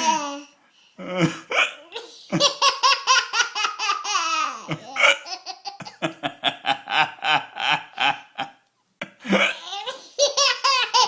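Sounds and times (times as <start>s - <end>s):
baby laughing: 1.9s - 6.0s, 9.4s - 11.0s.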